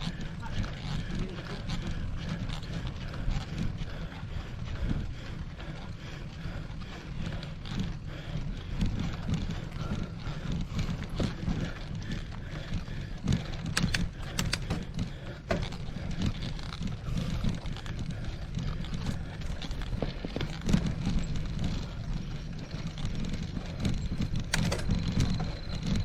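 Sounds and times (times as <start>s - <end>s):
mountain bike rolling on trail: 0.0s - 26.0s
sharp clicks: 13.6s - 15.8s, 24.3s - 25.3s.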